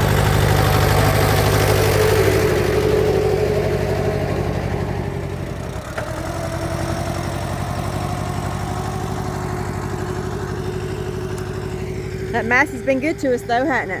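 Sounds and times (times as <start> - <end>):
tractor engine running: 0.0 - 14.0.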